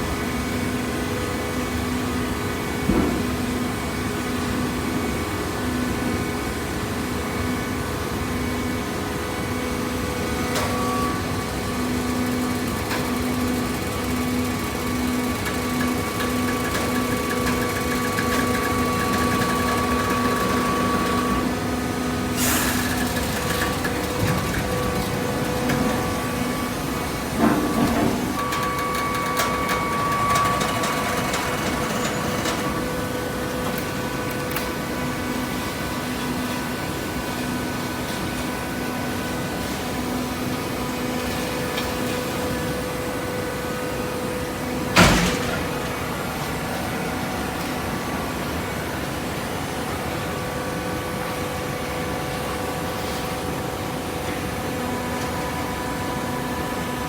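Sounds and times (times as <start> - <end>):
hydraulic baler motor hum: 10.2 - 35.5, 43.8 - 47.1.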